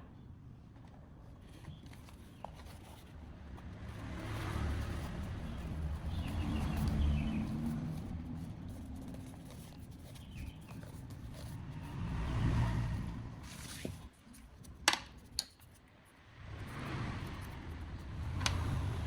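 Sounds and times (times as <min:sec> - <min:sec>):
rumbling and shuffling on work surface: 0:00.7 - 0:15.9.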